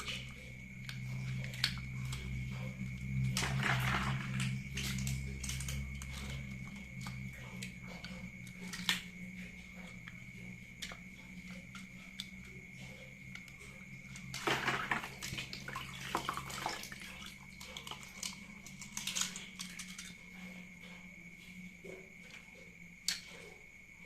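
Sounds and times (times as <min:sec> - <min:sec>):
faint steady hum: 0:00.0 - 0:24.0
water splashing and sloshing: 0:00.0 - 0:24.0
plastic toys knocking: 0:14.4 - 0:15.3.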